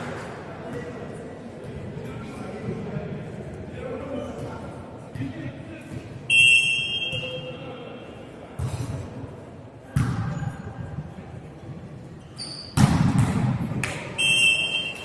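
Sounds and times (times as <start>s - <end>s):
referee's whistle: 6.3s - 7.5s, 14.2s - 15.0s.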